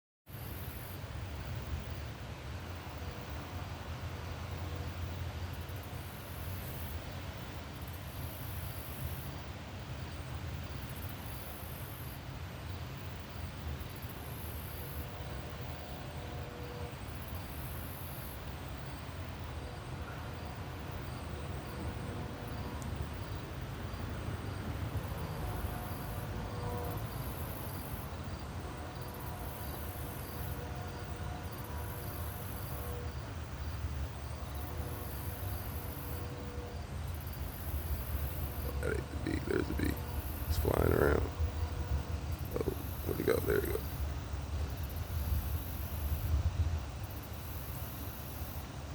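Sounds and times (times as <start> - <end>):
insects trilling shrilly: 25.0 - 44.2
steady low rumble: 38.6 - 44.3.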